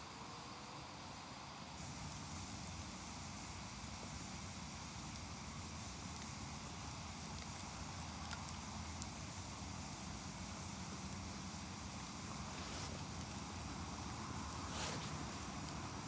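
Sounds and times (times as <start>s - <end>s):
wood fire hissing: 0.0s - 16.0s
fire crackles: 1.8s - 16.0s.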